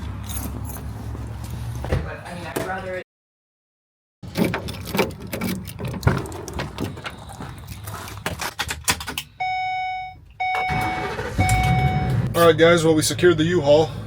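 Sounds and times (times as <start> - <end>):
electronic warning chime: 9.4 - 12.3.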